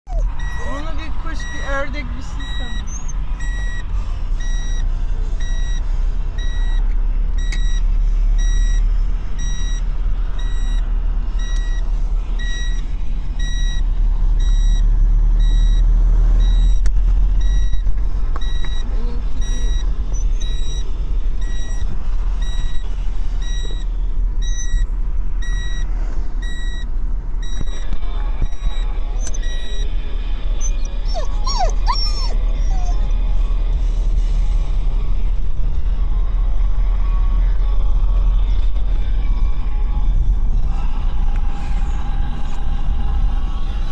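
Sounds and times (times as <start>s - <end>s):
vehicle rumble: 0.0s - 43.9s
car warning beeper: 0.1s - 30.0s.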